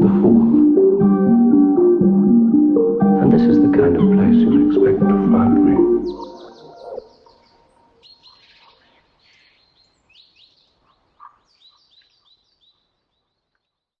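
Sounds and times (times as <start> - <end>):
faint bird chirps: 6.0 - 13.9.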